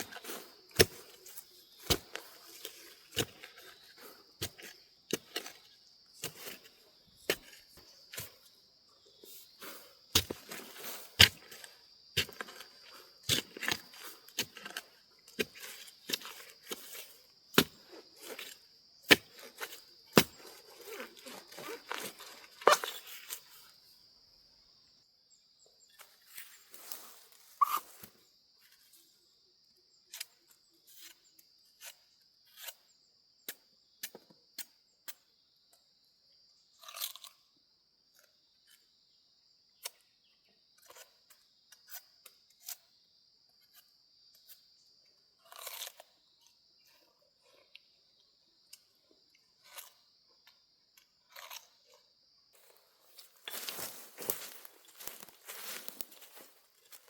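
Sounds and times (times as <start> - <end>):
dry plant material crunching: 52.6 - 57.0.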